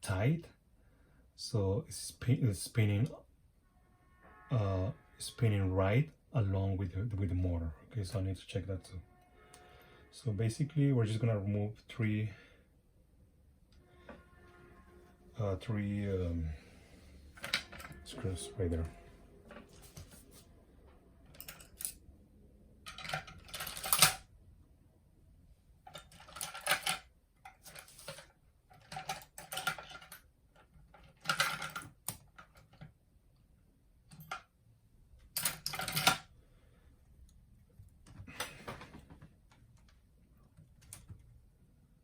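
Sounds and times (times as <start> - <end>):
small parts clicking: 22.9 - 24.2.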